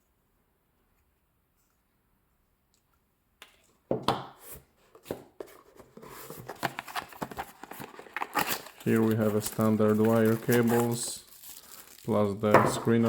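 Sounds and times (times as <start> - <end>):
packaging rustling and crinkling: 5.5 - 13.0.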